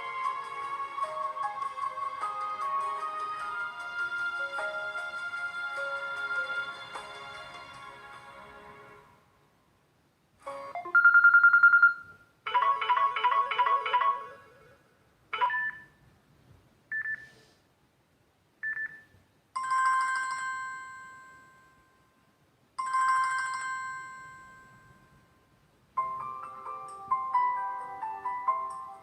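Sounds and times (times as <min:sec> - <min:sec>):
bell-like dings: 0:22.8 - 0:25.4.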